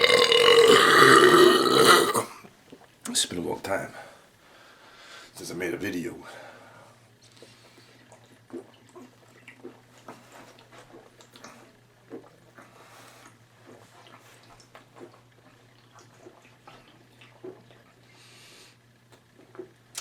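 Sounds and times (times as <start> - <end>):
man swallowing: 0.0 - 2.8.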